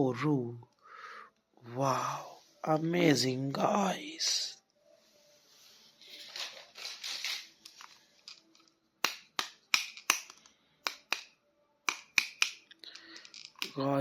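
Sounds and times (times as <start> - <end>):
plastic packaging rustling: 5.9 - 8.5
sharp plastic clicks and snaps: 9.0 - 13.8.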